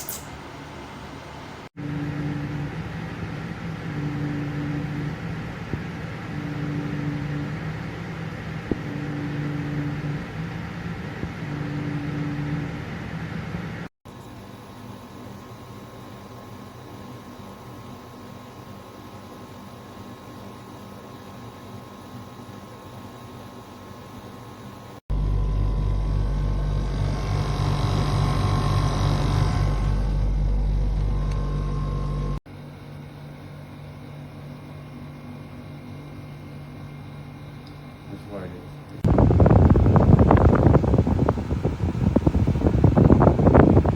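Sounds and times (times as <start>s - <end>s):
air conditioner hum and fan: 0.0s - 43.9s
air conditioner air rush and hum: 23.9s - 43.9s.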